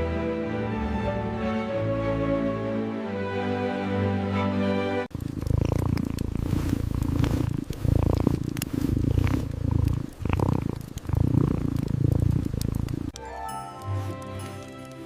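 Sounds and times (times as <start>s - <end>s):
music: 0.0s - 5.1s, 13.2s - 15.0s
cat purring: 5.1s - 13.2s.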